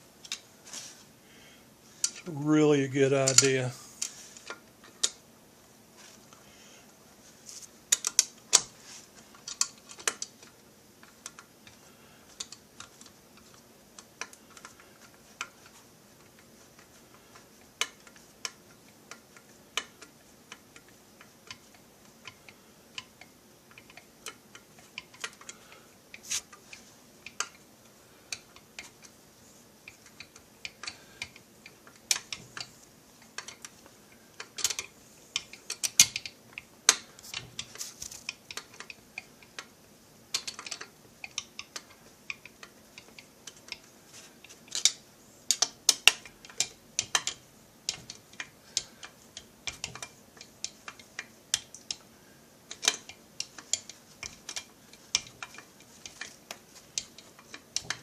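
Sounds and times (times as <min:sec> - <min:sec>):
hand tools and screws clicking: 0:00.2 - 0:00.5, 0:02.0 - 0:05.2, 0:07.9 - 0:58.0.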